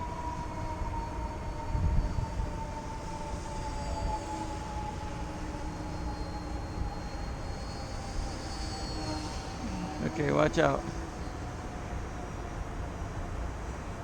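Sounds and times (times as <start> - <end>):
wind rumble on microphone: 1.4 - 2.6.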